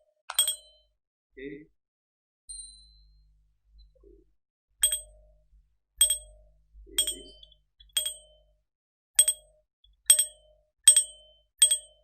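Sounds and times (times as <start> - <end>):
doorbell chime dings: 0.3 - 0.9, 4.8 - 5.3, 6.0 - 6.4, 7.0 - 7.4, 8.0 - 8.4, 9.2 - 9.5, 10.1 - 12.0.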